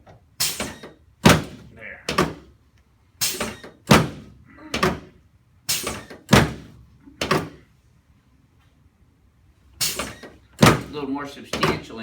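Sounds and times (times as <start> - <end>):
adjusting table thudding: 0.4 - 2.5, 3.2 - 7.6, 9.8 - 11.9.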